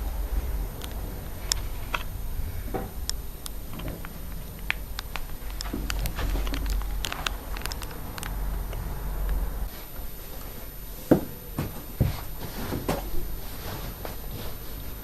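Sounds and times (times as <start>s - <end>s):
low rumble: 0.0s - 9.7s.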